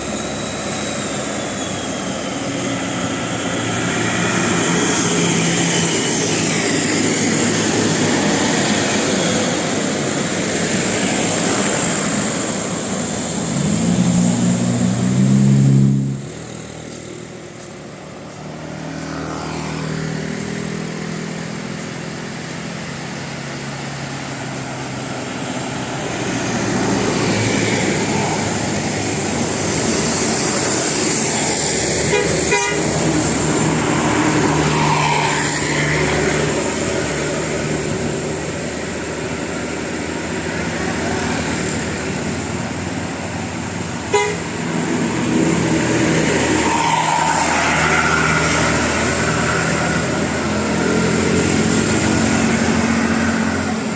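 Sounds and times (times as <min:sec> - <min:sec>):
bus engine running: 0:00.0 - 0:34.7, 0:35.3 - 0:53.9
multi-tone bus horn: 0:15.6 - 0:16.3, 0:32.0 - 0:33.3, 0:44.1 - 0:44.7.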